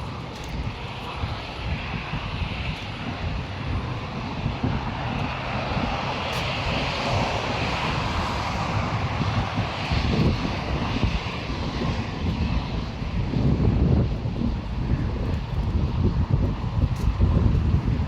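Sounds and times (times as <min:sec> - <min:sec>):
steady rushing noise: 0:00.0 - 0:18.0
wind buffeting microphone: 0:00.0 - 0:18.0.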